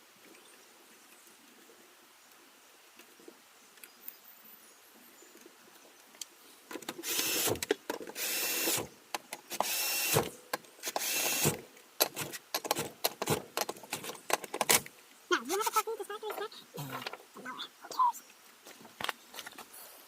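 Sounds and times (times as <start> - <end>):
power drill running in bursts: 7.0 - 7.6, 8.2 - 8.9, 9.5 - 11.6.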